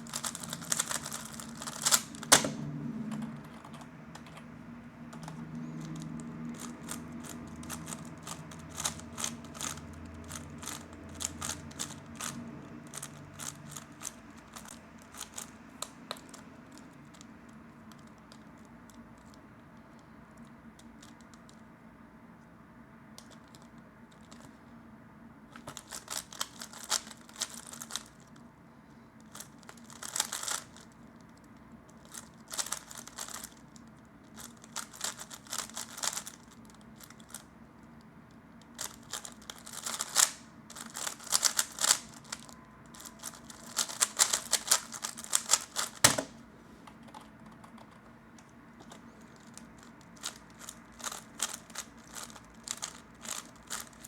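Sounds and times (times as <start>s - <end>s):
faint steady hum: 0.0s - 54.0s
puzzle cube layers clicking: 0.1s - 2.5s, 38.8s - 42.3s, 43.0s - 46.2s.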